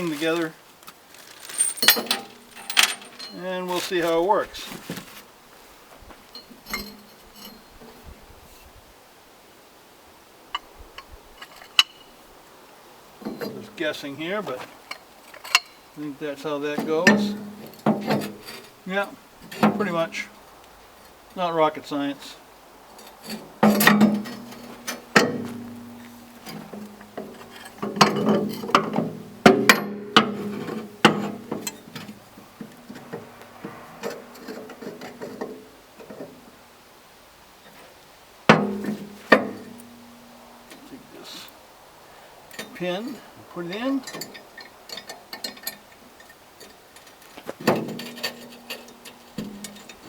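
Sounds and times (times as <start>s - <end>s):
light metal clicks and clinks: 1.4s - 4.2s, 6.3s - 8.0s, 14.5s - 16.0s, 42.4s - 50.0s
steel parts knocking and ringing: 1.5s - 4.1s, 6.4s - 7.7s, 16.8s - 18.7s, 23.3s - 32.2s, 38.5s - 40.9s, 47.7s - 50.0s.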